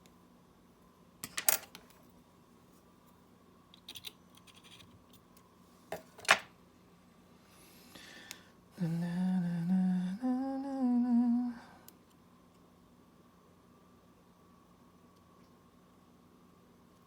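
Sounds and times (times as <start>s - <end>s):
person humming: 8.7s - 11.9s.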